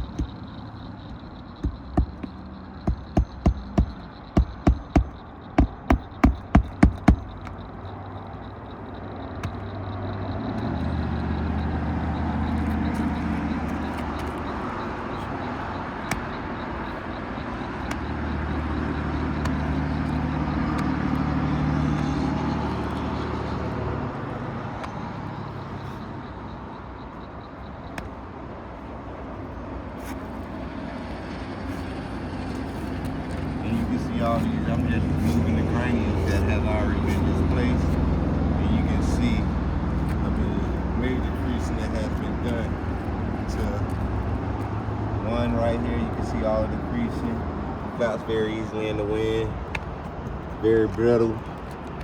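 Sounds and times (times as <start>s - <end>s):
hammer striking roofing nails: 0.0s - 0.5s, 1.5s - 7.6s
road traffic passing: 0.0s - 52.0s.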